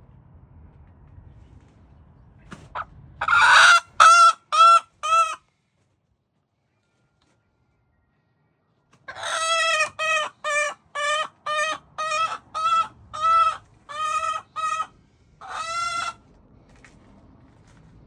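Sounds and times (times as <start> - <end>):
hen squawking: 3.2 - 5.4, 9.1 - 16.2.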